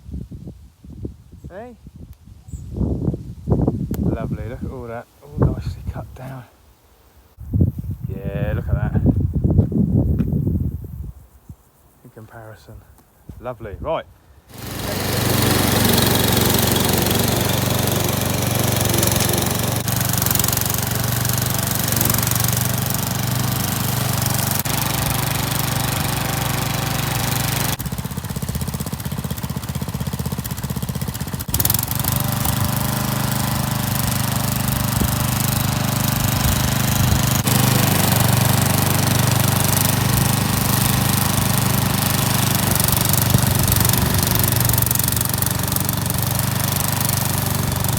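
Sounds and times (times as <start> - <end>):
lawn mower engine running: 14.5 - 47.9.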